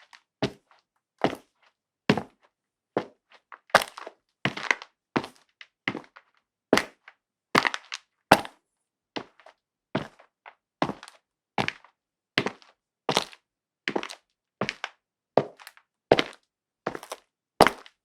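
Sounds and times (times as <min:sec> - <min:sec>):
footsteps on concrete: 0:07.6 - 0:08.6, 0:09.2 - 0:18.0.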